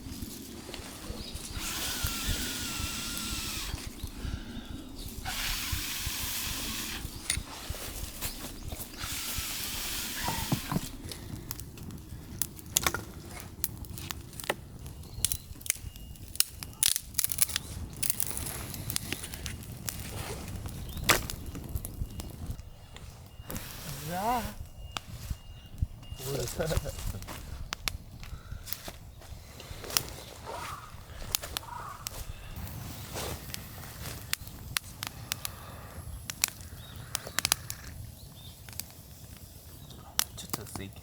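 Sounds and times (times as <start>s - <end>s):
burning wood crackling: 0.0s - 41.0s
air blown into a fire: 23.4s - 24.6s, 32.5s - 38.0s.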